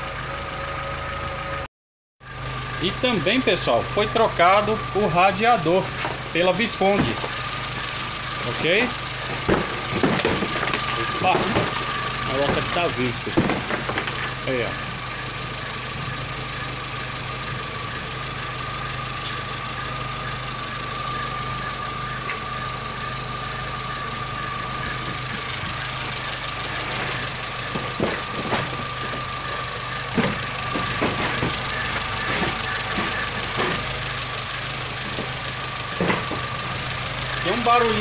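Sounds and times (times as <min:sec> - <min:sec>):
car engine idling: 0:00.0 - 0:38.0
high belt whine: 0:00.0 - 0:38.0
knocks: 0:09.3 - 0:11.9, 0:12.5 - 0:14.3.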